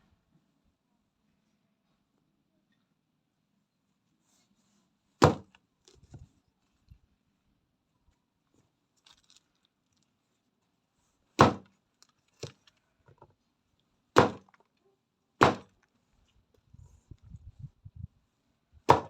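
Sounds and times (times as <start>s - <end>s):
chopping on wooden board: 5.2s - 5.5s, 11.4s - 11.7s, 14.2s - 14.6s, 15.4s - 15.7s.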